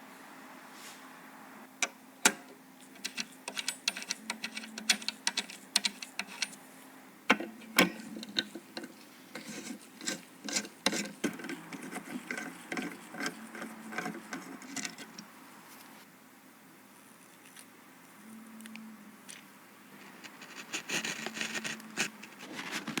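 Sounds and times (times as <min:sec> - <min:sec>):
computer parts clicking and scraping: 0:02.2 - 0:06.6, 0:07.3 - 0:15.3, 0:20.2 - 0:23.0.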